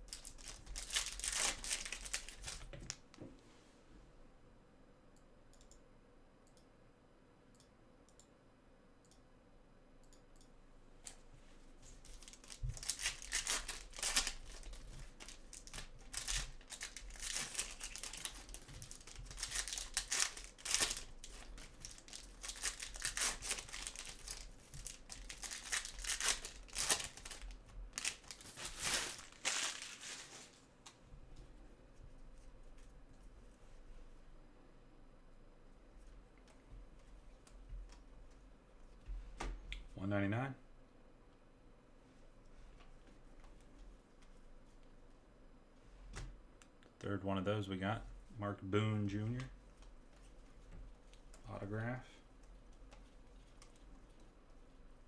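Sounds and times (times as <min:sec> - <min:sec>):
foil wrappers crinkling: 0:00.0 - 0:03.0, 0:11.8 - 0:30.7
card packs tearing: 0:00.1 - 0:03.0, 0:12.0 - 0:30.6.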